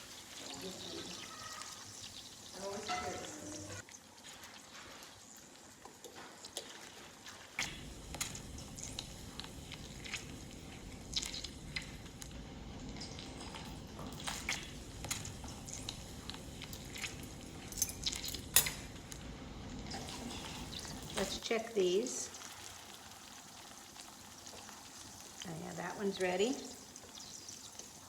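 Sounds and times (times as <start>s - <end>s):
chicken sizzling in a frying pan: 0.0s - 28.0s
oil popping: 5.9s - 21.4s.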